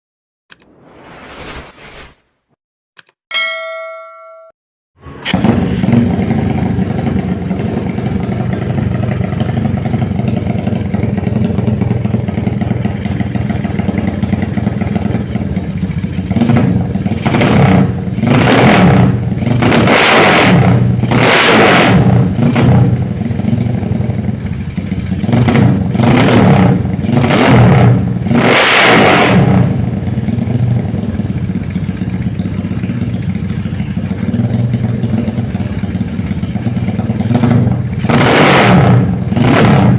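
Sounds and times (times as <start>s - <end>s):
motorcycle engine revving: 5.2s - 39.9s
motorcycle idling: 5.4s - 18.2s, 22.2s - 26.0s, 29.7s - 38.1s.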